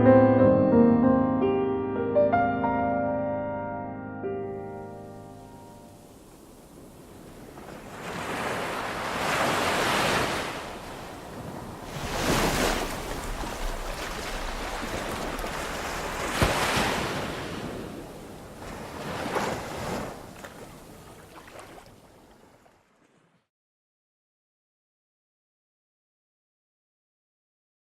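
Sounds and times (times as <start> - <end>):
waves breaking: 5.1 - 23.4
wind rumbling on microphone: 5.9 - 21.2.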